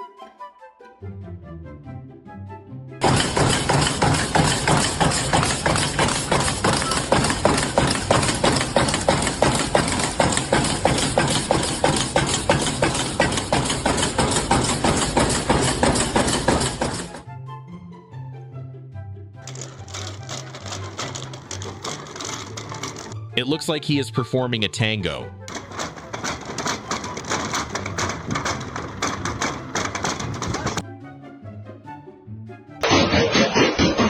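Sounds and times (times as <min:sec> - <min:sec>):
machine clattering: 0:03.0 - 0:17.2, 0:19.5 - 0:23.2, 0:25.5 - 0:30.8, 0:32.8 - 0:34.0.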